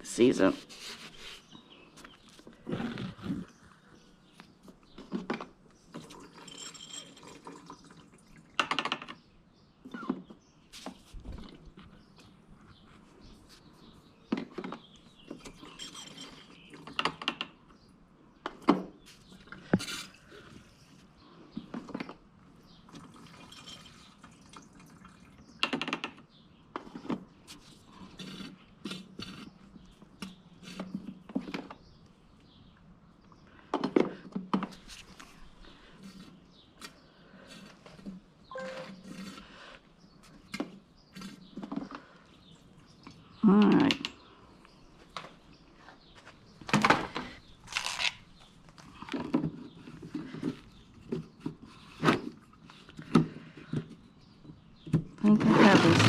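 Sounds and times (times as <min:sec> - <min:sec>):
fuel trickling and dripping: 0:06.0 - 0:08.6, 0:22.8 - 0:25.6.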